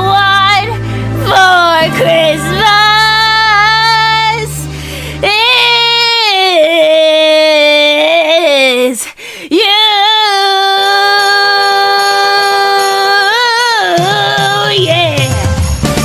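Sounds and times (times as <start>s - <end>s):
woman singing long notes: 0.0s - 4.6s, 5.2s - 15.6s
low instrumental accompaniment: 0.0s - 5.9s.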